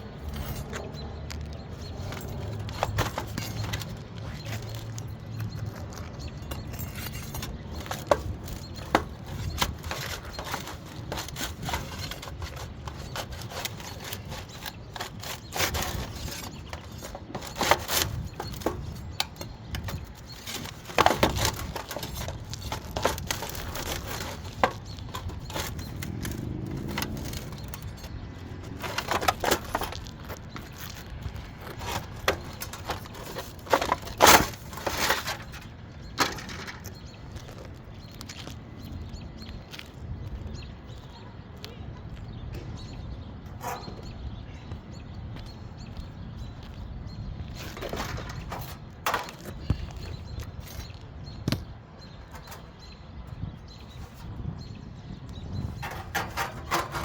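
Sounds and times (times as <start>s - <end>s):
hand tools knocking and scraping shingles: 0.0s - 37.6s, 47.6s - 50.9s, 55.6s - 57.0s.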